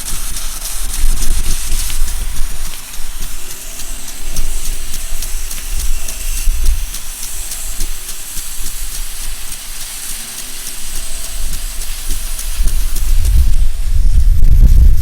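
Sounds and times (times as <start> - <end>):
water spraying hiss: 0.0 - 15.0
low rumble: 13.0 - 15.0.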